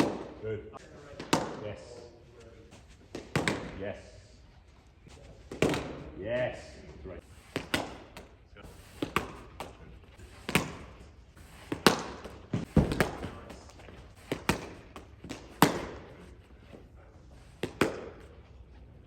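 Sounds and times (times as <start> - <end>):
balls slapping into gloves: 0.0 - 0.4, 1.1 - 1.9, 3.0 - 3.9, 5.5 - 6.2, 7.4 - 19.0.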